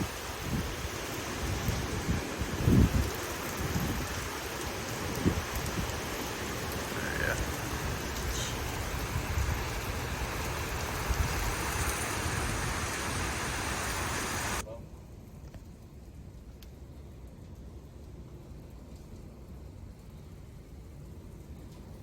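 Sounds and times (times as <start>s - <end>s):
heavy rain falling: 0.0s - 14.6s
wind buffeting microphone: 0.0s - 14.6s.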